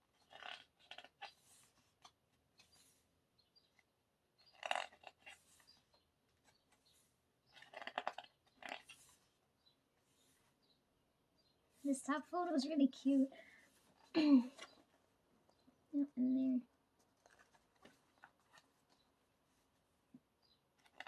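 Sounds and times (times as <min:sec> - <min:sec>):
paper pages rustling: 0:17.0 - 0:19.7.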